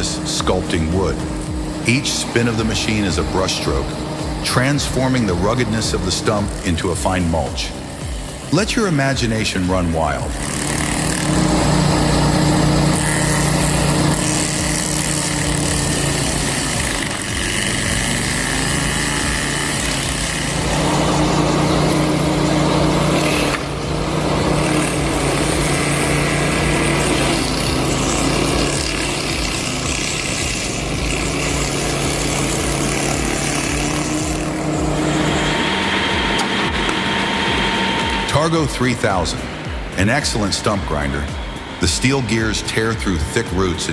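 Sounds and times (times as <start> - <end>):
stump grinder engine running: 0.0 - 43.9.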